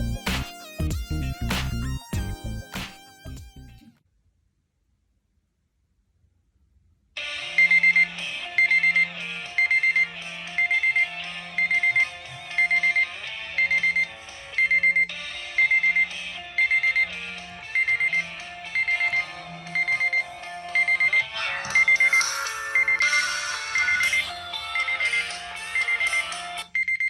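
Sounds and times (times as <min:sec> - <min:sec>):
electronic melody: 0:00.0 - 0:04.0, 0:07.4 - 0:26.7
quick electronic beeps: 0:13.6 - 0:17.1, 0:17.7 - 0:25.1.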